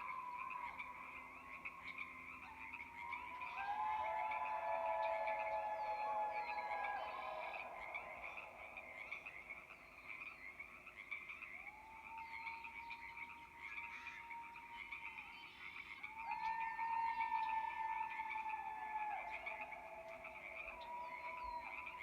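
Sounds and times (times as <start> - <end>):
frogs croaking: 0.0 - 22.0
faint human howls: 3.2 - 8.5, 16.2 - 22.0.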